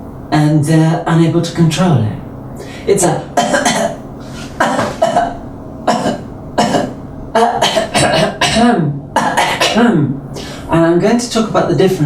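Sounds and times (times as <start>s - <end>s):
woman clearing her throat: 3.4s - 4.0s, 4.6s - 10.1s
woman coughing: 3.4s - 4.0s, 4.6s - 10.0s.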